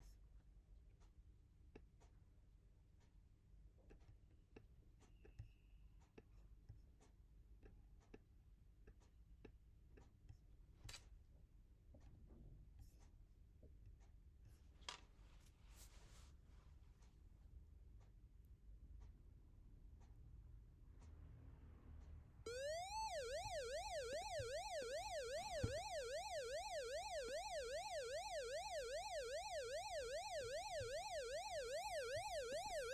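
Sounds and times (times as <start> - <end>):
alarm clock siren tone: 22.5 - 32.9.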